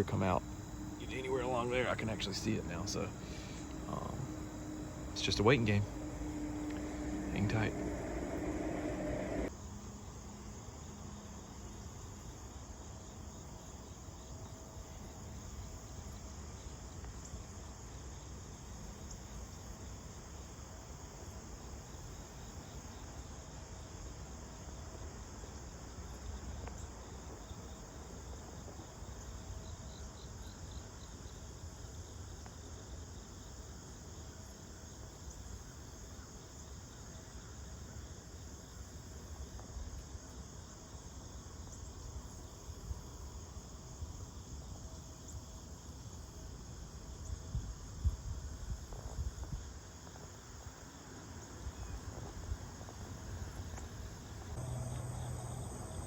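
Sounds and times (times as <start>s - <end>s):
faint low rumble: 0.0s - 9.5s
crickets chirping: 0.0s - 56.0s.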